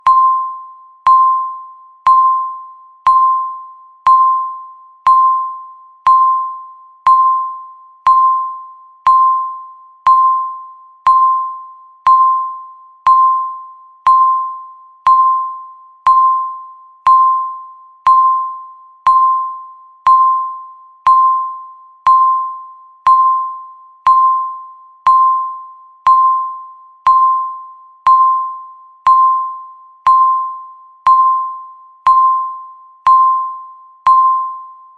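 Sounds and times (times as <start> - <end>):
electronic timer beeps: 0.0 - 34.9.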